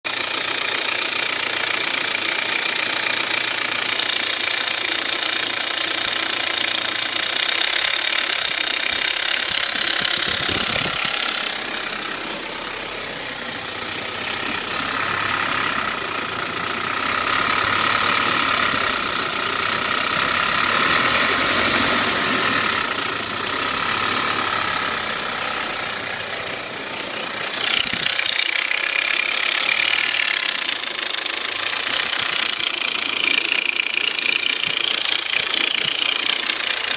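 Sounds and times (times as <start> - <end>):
engine running: 0.1 - 36.9.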